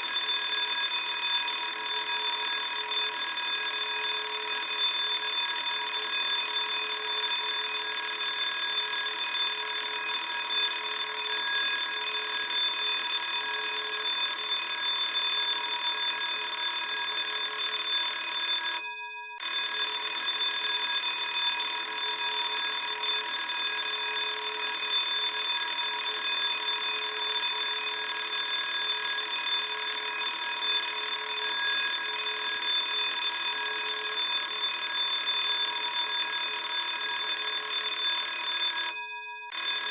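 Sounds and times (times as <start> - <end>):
school bell ringing: 29.6 - 35.7.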